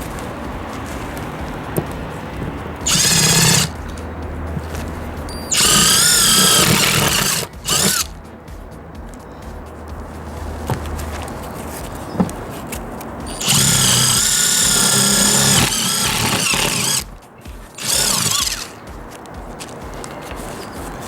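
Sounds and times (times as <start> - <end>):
power tool motor whining: 2.8 - 3.8, 5.3 - 8.1, 13.3 - 18.8.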